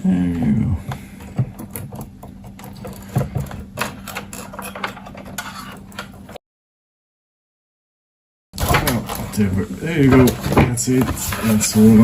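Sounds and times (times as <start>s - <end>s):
steady low hum: 0.0s - 6.4s
electrical wires clicking and rattling: 0.8s - 6.4s, 8.6s - 12.0s.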